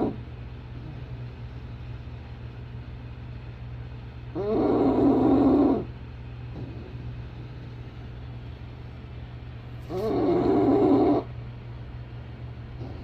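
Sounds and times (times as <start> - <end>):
dog snoring: 0.0 - 0.2, 0.8 - 1.7, 4.3 - 8.0, 9.8 - 11.3, 12.8 - 13.0.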